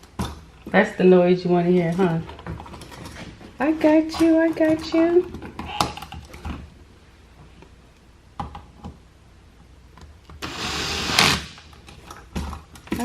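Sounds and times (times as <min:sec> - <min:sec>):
power drill driving a screw: 0:10.4 - 0:11.7.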